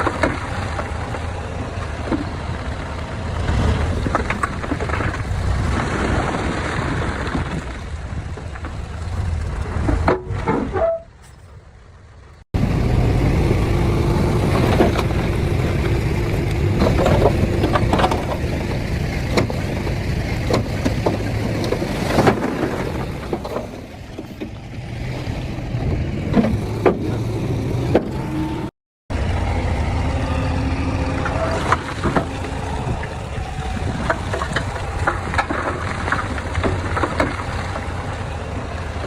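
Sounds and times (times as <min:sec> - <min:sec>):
bulldozer diesel engine running: 0:00.0 - 0:39.0
metallic clanks and knocks: 0:16.8 - 0:19.9.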